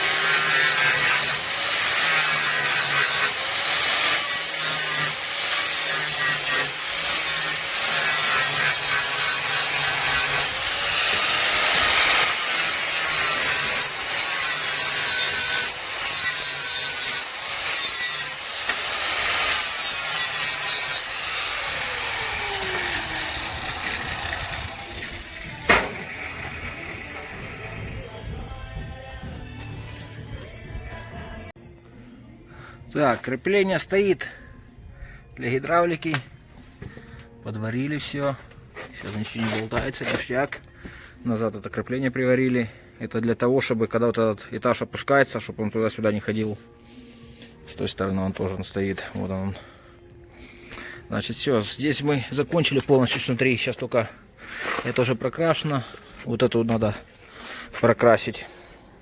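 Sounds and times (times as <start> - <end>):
angle grinder grinding steel: 0.0 - 28.3
grinder winding down whine: 18.3 - 28.2.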